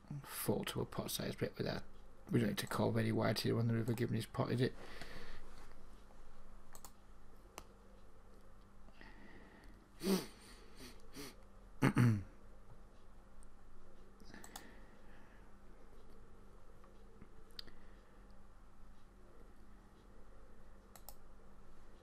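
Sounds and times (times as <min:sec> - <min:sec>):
computer mouse clicks: 0:06.7 - 0:07.0, 0:14.2 - 0:14.7, 0:20.8 - 0:21.2.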